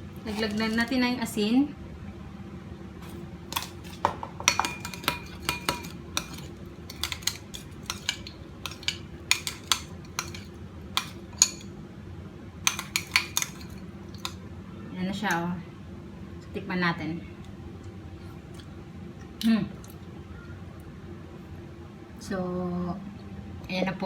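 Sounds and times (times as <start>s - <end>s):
metal utensil clinking against dish: 0.2s - 1.0s, 3.0s - 11.7s, 12.6s - 14.4s.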